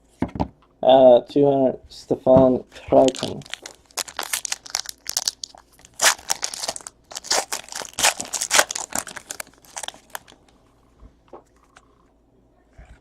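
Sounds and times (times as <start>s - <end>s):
foil wrappers crinkling and tearing: 3.0s - 10.5s.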